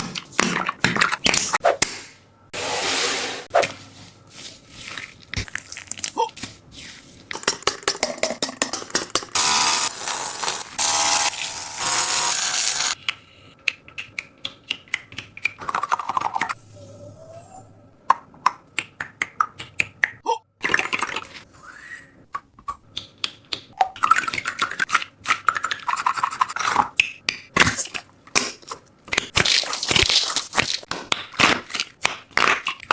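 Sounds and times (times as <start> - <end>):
squishy toys crackling and rustling: 4.7 - 6.7.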